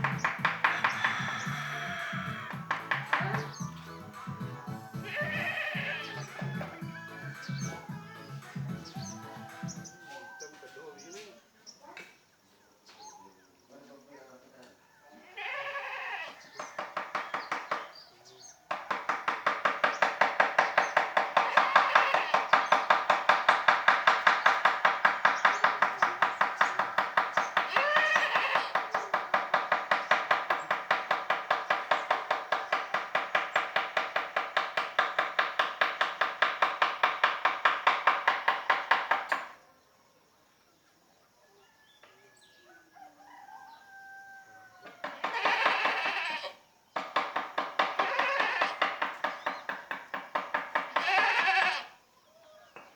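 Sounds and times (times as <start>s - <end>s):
mallet tapping chisel into wood: 0.0s - 1.3s, 2.5s - 3.7s
faint farm animals calling: 0.0s - 36.8s, 37.9s - 52.9s.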